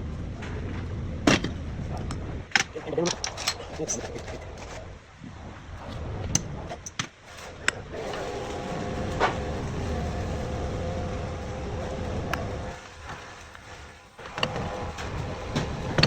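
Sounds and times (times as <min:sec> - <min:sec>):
motor humming and whining: 0:07.7 - 0:16.0.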